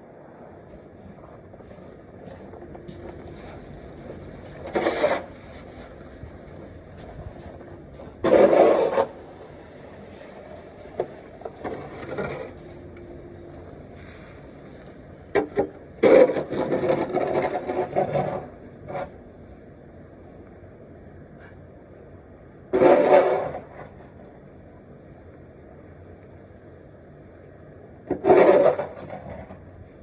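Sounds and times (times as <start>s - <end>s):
crunching and scraping in snow: 1.2s - 19.2s.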